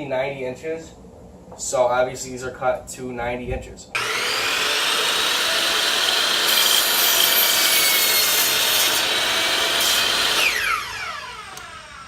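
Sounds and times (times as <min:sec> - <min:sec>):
power saw cutting wood: 0:04.0 - 0:12.0.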